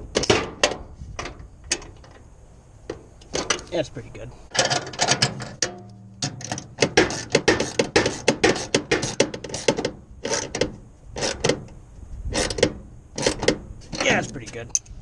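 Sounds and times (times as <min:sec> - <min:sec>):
hand ratchet clicking: 0:06.4 - 0:11.6.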